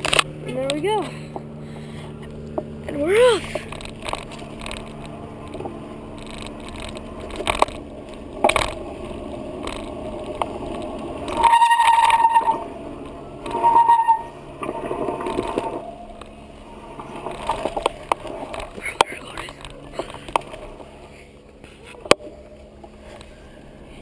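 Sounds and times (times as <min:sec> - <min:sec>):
bike riding rumble and rattles: 0:00.0 - 0:24.0
loud high squeal: 0:11.3 - 0:16.2.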